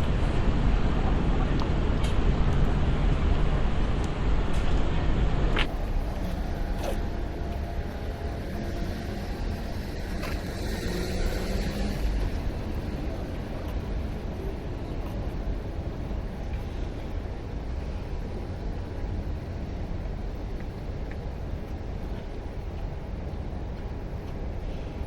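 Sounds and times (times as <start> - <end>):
ambient hum: 0.0 - 25.0
distant traffic: 0.0 - 25.0.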